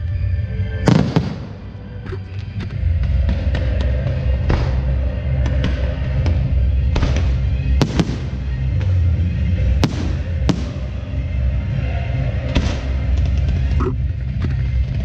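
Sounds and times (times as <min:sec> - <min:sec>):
bass-heavy music: 0:00.0 - 0:15.0
fireworks bangs: 0:00.9 - 0:01.9, 0:06.9 - 0:09.0, 0:09.8 - 0:11.2.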